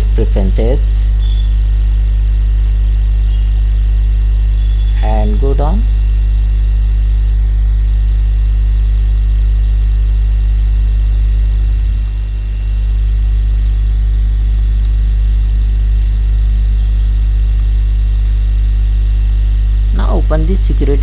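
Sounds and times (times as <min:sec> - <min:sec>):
electrical mains hum: 0:00.0 - 0:21.0.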